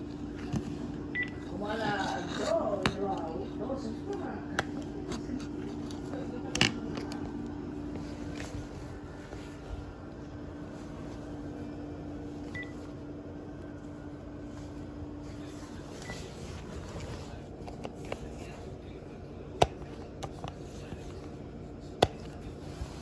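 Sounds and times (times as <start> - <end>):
low steady hum: 0.0 - 23.0
high key-press beeps: 1.1 - 1.4, 12.5 - 12.7.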